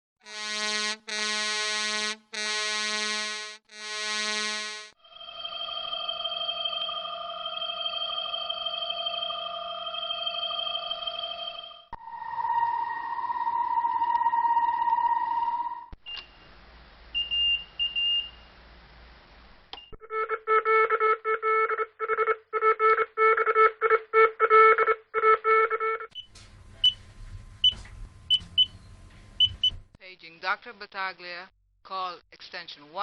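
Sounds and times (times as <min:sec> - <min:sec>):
low hum: 0:05.0 - 0:16.0.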